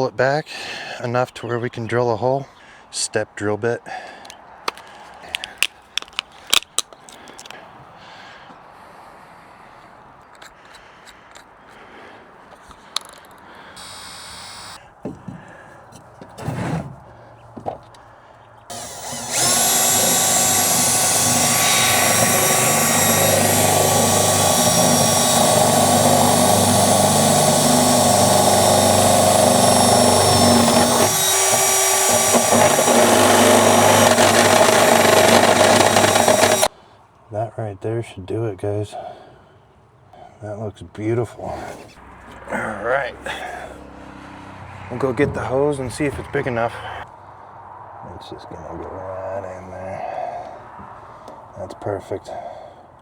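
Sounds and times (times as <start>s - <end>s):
handling clicks and knocks: 4.7s - 7.6s
power drill cutting metal: 13.8s - 14.8s, 18.7s - 36.7s.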